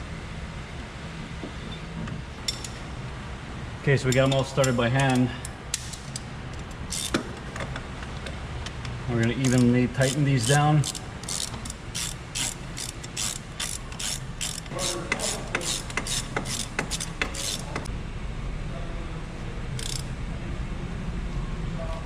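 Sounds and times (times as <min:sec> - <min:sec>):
hand ratchet clicking: 0:04.1 - 0:07.2, 0:09.2 - 0:17.9, 0:19.8 - 0:20.1.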